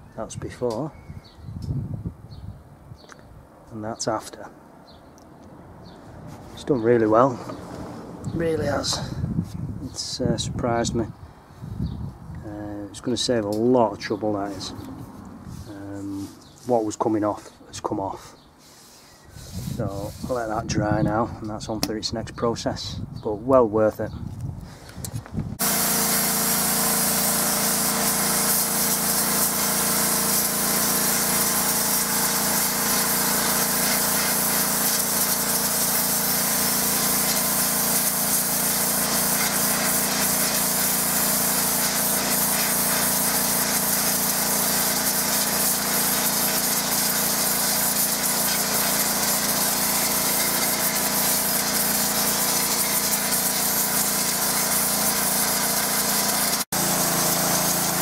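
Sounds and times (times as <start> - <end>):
high-pressure water jet hissing: 25.6 - 58.0.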